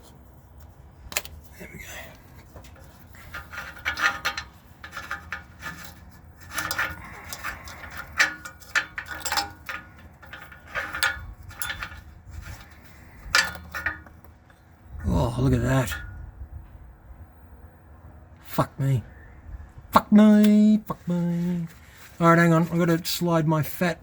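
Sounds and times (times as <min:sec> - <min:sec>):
hand tools scraping on metal: 0:02.4 - 0:14.6.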